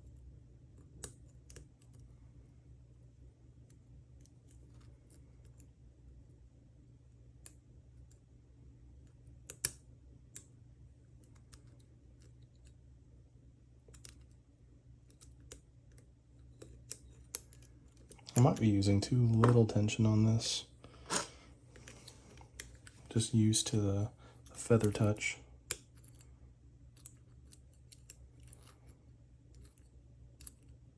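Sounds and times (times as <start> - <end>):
steady low hum: 0.0 - 30.9
lock pick clicking and scraping: 26.9 - 28.9.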